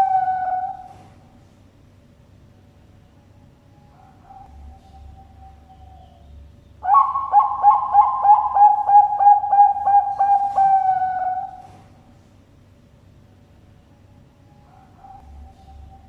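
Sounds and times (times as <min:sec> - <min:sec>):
dove cooing: 0:00.0 - 0:01.2, 0:06.8 - 0:12.0.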